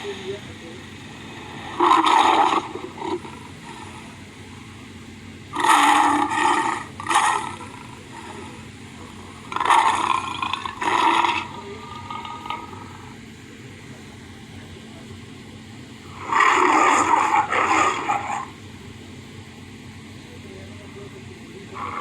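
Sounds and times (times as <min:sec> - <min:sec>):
lion roar: 0:01.0 - 0:04.7, 0:05.5 - 0:13.2, 0:16.0 - 0:18.6, 0:21.7 - 0:22.0.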